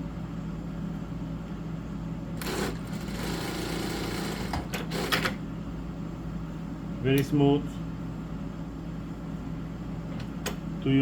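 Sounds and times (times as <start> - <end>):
steady low hum: 0.0 - 11.0
sewing machine stitching: 2.4 - 5.4.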